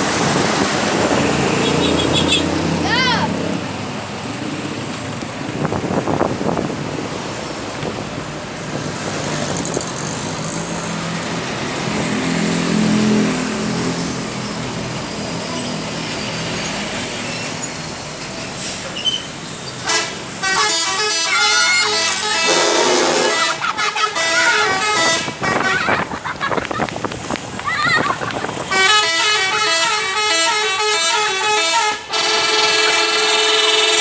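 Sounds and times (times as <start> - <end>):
heavy vehicle engine: 0.0 - 34.0
passing road traffic: 0.0 - 34.0
bus multi-tone horn tune: 1.5 - 2.6, 19.8 - 26.1, 28.7 - 34.0.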